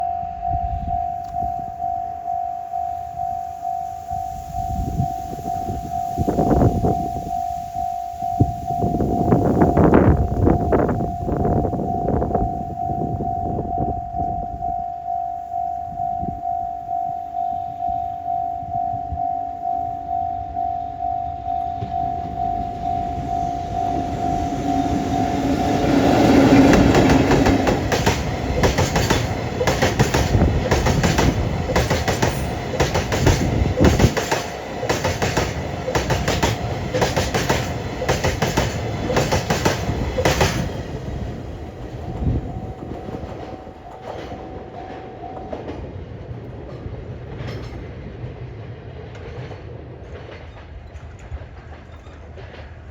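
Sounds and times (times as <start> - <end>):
level crossing warning bell: 0.0 - 45.9
electric locomotive passing: 0.0 - 52.9
wagon wheels clattering over rail joints: 25.9 - 45.8.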